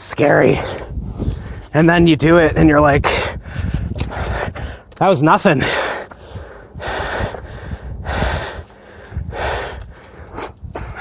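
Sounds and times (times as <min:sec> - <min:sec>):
heavy breathing: 0:03.0 - 0:04.9, 0:05.6 - 0:11.0.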